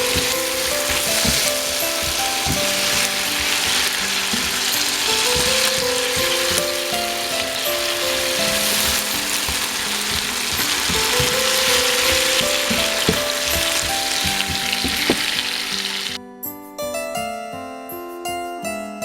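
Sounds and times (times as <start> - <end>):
spatula scraping and knocking pan: 0.0 - 16.2
vegetables sizzling in hot oil: 0.0 - 16.2.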